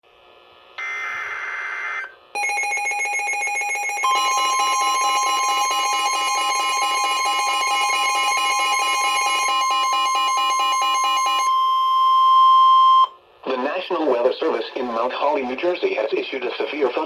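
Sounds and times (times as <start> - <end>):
harsh electronic attention tone: 14.6 - 15.8.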